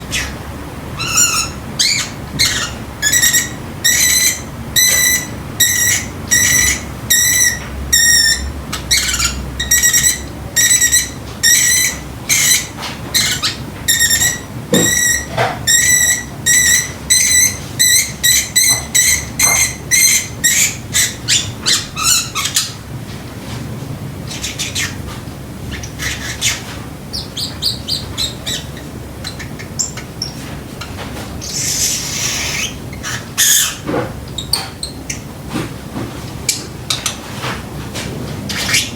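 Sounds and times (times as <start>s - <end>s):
parrotlet mimicking alarm beeps: 1.0s - 8.4s, 9.0s - 12.6s, 13.9s - 21.4s.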